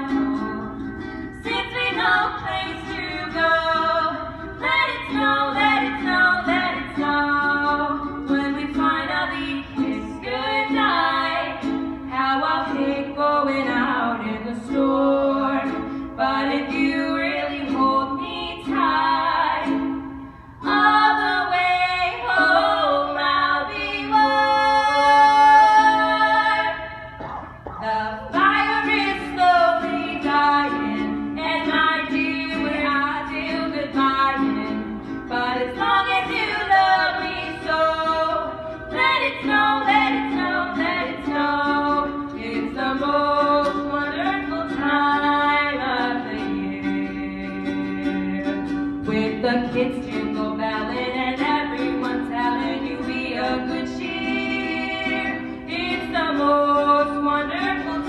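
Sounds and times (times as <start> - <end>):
two women singing: 0.0 - 58.0
sustained accompanying notes: 27.1 - 28.4.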